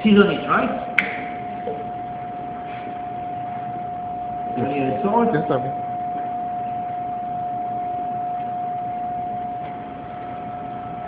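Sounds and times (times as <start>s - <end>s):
steady high whine: 0.0s - 11.0s.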